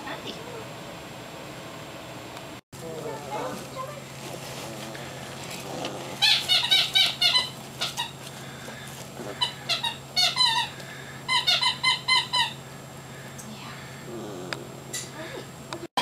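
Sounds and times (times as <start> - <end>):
puppies squeaking and whimpering: 6.0 - 8.6, 9.2 - 12.6.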